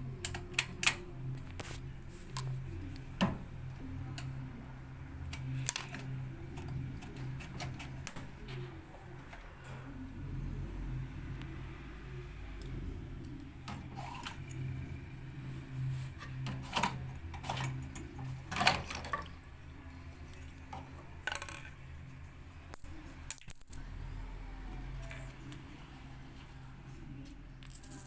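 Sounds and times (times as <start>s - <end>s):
low hum: 0.0s - 27.5s.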